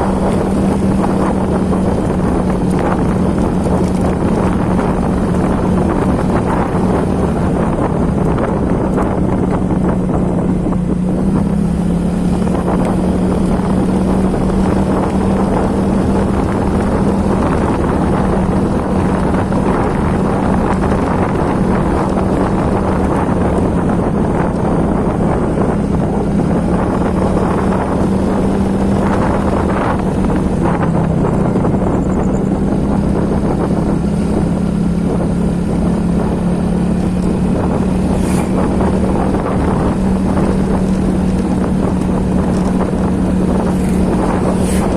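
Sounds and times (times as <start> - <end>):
wind or rain noise: 0.0 - 44.9
small engine running: 34.5 - 44.9.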